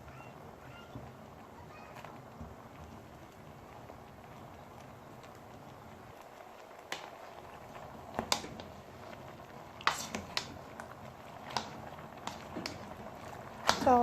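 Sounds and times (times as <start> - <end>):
low steady background noise: 0.0 - 14.0
clicks and knocks against a pot: 8.1 - 14.0.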